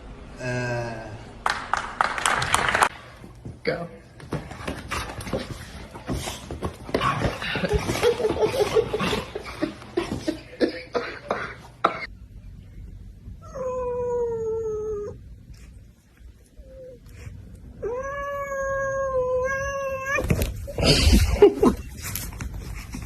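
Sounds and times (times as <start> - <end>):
scuffling and knocking: 4.2 - 10.4
cat meowing: 17.8 - 20.4.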